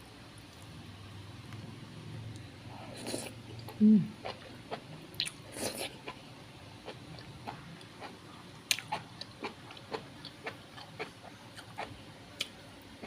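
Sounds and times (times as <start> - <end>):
chewing noises: 6.8 - 12.5.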